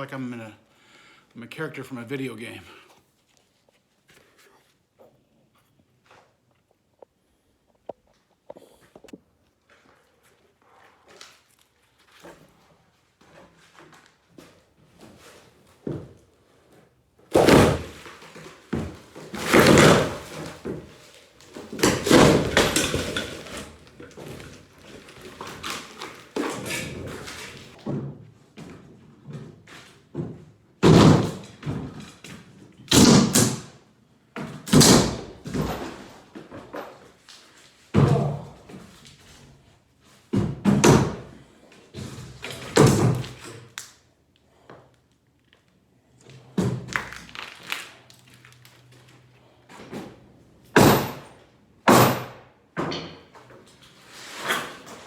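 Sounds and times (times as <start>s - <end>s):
demolition thuds and crashes: 17.3s - 28.0s, 30.1s - 32.3s, 34.6s - 37.0s, 50.7s - 53.0s
debris clattering: 17.4s - 27.7s.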